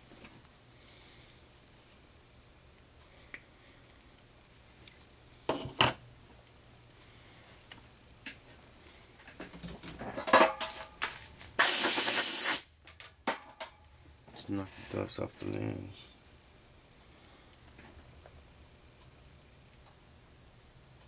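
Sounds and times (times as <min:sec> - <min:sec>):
tools and parts clattering: 0:09.2 - 0:12.3
compressed air blast: 0:11.6 - 0:12.7.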